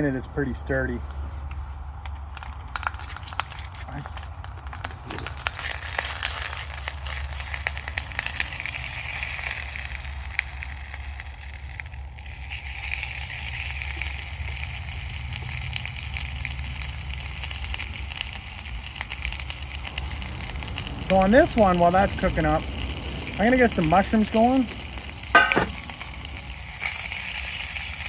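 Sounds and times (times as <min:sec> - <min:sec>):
sausages sizzling in a pan: 0:02.8 - 0:28.0.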